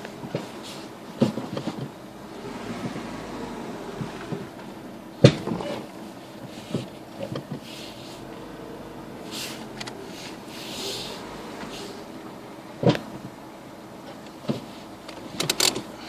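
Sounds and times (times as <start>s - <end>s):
car brake clunk: 0.0s - 2.0s, 2.7s - 6.0s, 6.6s - 7.7s, 9.2s - 13.4s, 14.0s - 16.0s.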